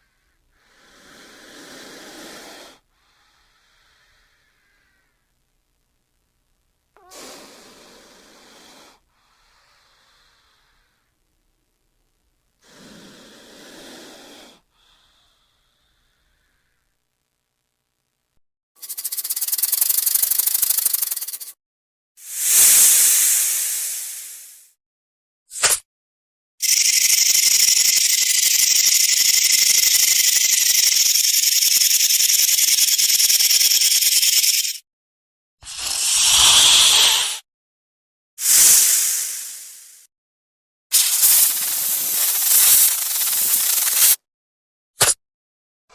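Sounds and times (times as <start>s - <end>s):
faint breathy hiss: 0.0s - 18.0s, 22.2s - 24.8s, 35.6s - 37.4s, 38.4s - 40.1s, 41.0s - 44.2s
snake hissing: 0.1s - 5.0s, 7.0s - 11.0s, 12.6s - 16.7s, 18.8s - 21.6s, 22.2s - 24.8s, 26.6s - 34.8s, 35.6s - 37.5s, 38.4s - 40.1s, 40.9s - 44.2s.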